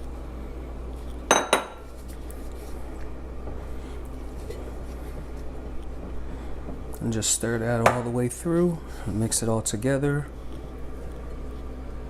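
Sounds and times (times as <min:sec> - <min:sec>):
steady low hum: 0:00.0 - 0:12.0
glassy clink: 0:01.3 - 0:01.8.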